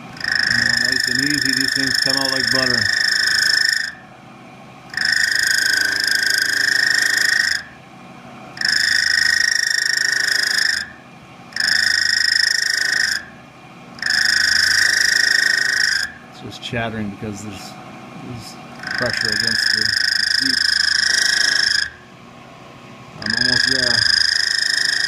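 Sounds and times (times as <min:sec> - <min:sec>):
milling cutter chattering squeal: 0:00.1 - 0:04.1, 0:04.9 - 0:07.8, 0:08.6 - 0:11.0, 0:11.6 - 0:13.3, 0:14.0 - 0:16.2, 0:18.8 - 0:22.0, 0:23.2 - 0:25.0.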